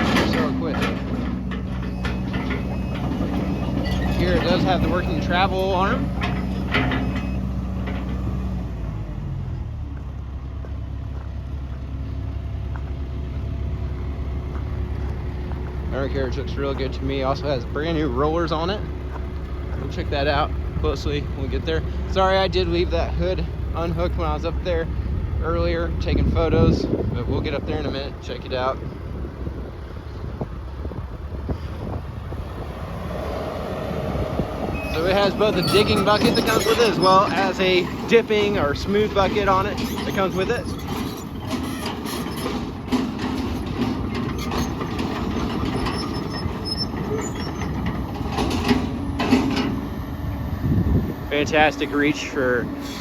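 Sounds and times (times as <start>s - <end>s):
excavator diesel engine running: 0.0s - 53.0s
wind buffeting microphone: 23.5s - 41.6s, 42.5s - 51.7s.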